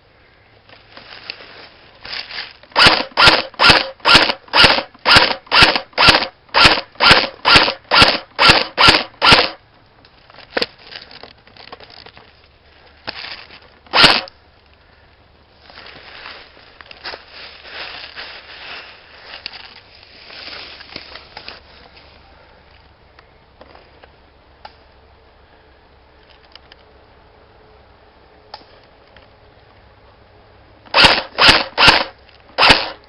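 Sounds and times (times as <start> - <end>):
airsoft gun shots: 2.8 - 9.6, 13.9 - 14.3, 30.9 - 33.0.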